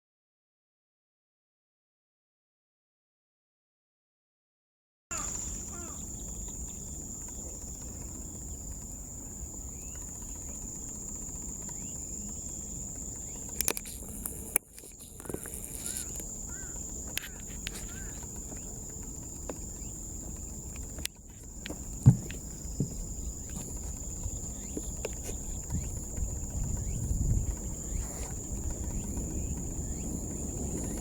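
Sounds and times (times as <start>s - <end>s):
high-pitched insect drone: 5.1s - 31.0s
sharp clicks: 13.3s - 19.1s
thump: 22.0s - 23.0s.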